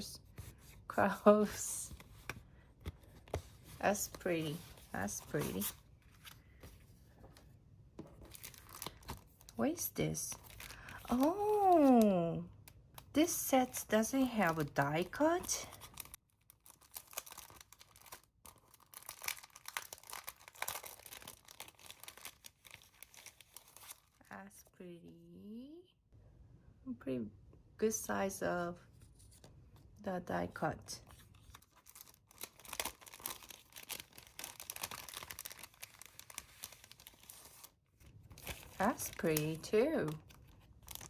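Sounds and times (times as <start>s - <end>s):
packaging crinkling: 8.2s - 9.6s, 10.3s - 12.0s, 14.7s - 24.2s, 31.1s - 41.0s.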